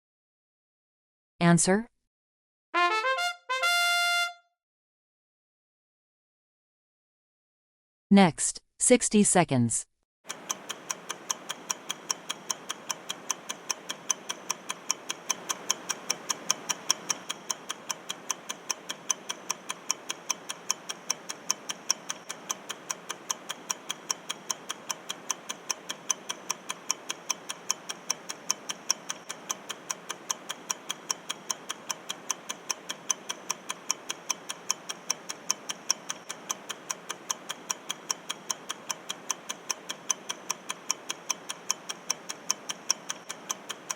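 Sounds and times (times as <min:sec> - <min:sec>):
clock ticking: 0:10.3 - 0:43.9.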